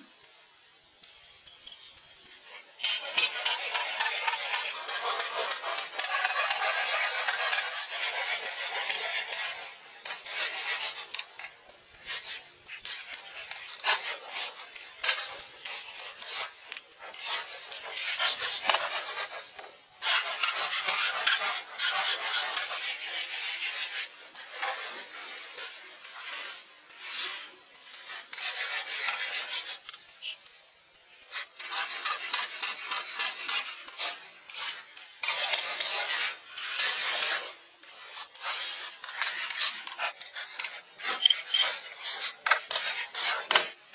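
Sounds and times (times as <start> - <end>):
hand tool rasping and scraping: 31.4 - 43.7.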